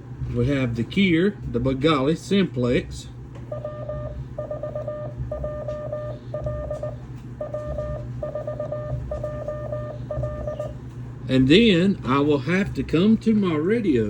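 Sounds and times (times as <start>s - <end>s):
low steady hum: 0.0s - 14.0s
morse code beeps: 3.5s - 10.8s.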